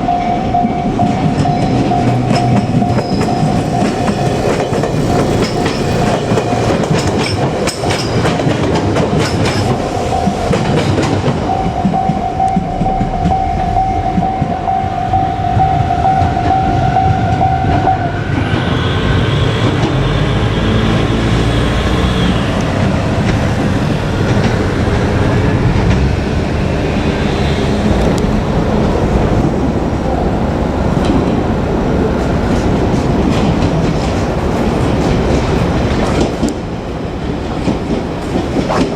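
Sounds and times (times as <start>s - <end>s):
train wheels clattering over rail joints: 1.0s - 13.3s, 22.6s - 38.9s
steady high tone: 9.7s - 19.1s
higher pulsing tone: 11.4s - 17.7s.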